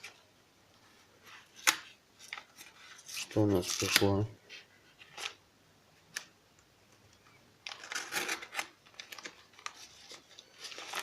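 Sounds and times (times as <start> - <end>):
plastic wrapping crinkling: 7.6 - 11.0.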